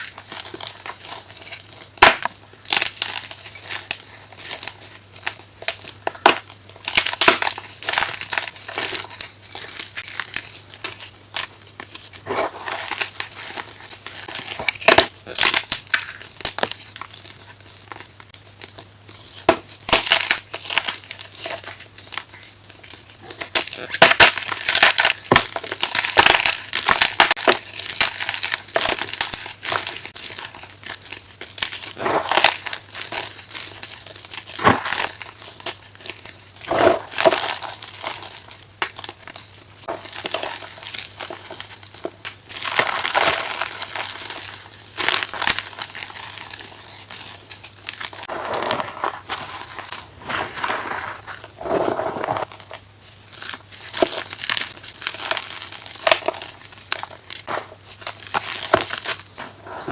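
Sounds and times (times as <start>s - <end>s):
chalk crunching and crumbling: 0.0s - 59.9s.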